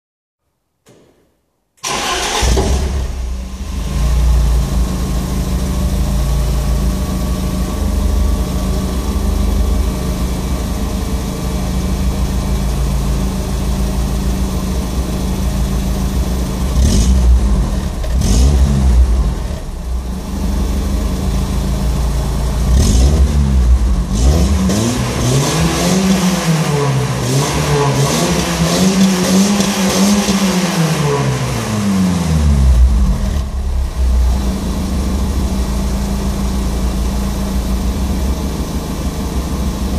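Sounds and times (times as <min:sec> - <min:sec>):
car engine revving: 0:01.8 - 0:39.9
car engine starting and idling: 0:01.8 - 0:39.9.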